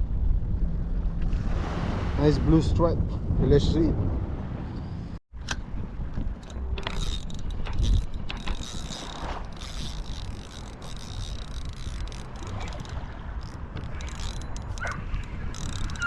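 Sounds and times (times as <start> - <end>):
wind rumbling on microphone: 0.0 - 16.0
fishing reel clicking and whirring: 6.4 - 16.0.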